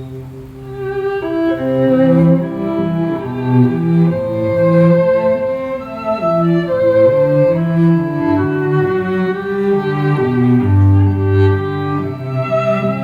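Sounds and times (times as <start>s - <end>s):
cello and violin playing: 0.0s - 13.0s.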